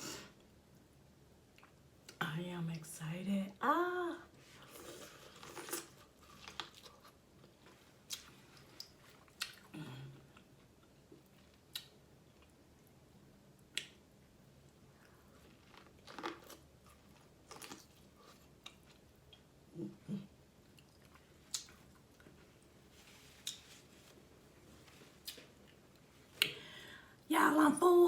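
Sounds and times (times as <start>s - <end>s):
wet chewing and mouth sounds: 4.7s - 9.7s, 10.3s - 13.0s, 14.6s - 19.6s, 20.2s - 26.5s.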